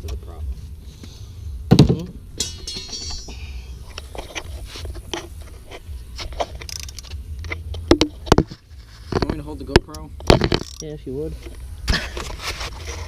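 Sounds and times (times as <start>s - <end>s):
metal clicks knocks and scrapes: 3.9s - 11.6s
ratchet wrench clicking: 6.4s - 7.8s, 9.9s - 11.0s.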